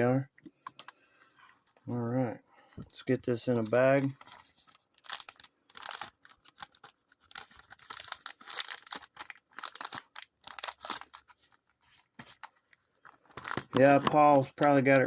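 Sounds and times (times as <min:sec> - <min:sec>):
plastic bag crinkling: 0:04.3 - 0:11.4.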